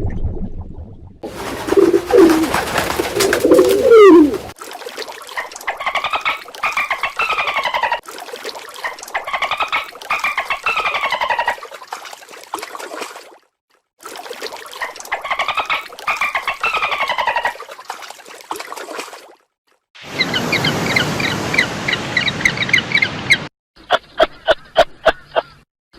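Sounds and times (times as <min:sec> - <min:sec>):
animal pulsed calls: 0:01.2 - 0:04.6.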